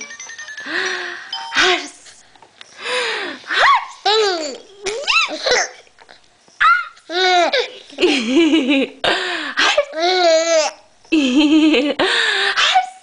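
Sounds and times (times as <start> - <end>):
woman laughing: 7.9 - 9.2, 11.1 - 12.2.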